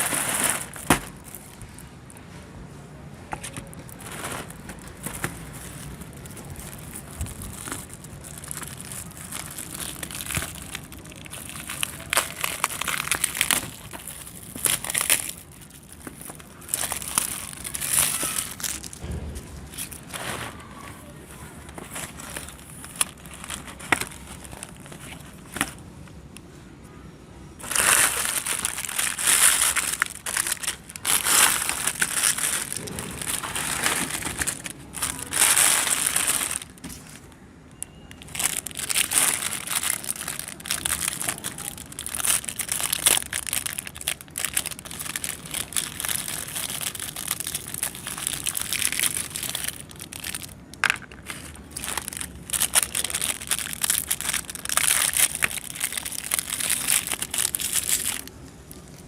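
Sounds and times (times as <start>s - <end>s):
grinder crunching biscuits: 3.6s - 19.1s, 27.6s - 36.9s, 38.2s - 59.0s.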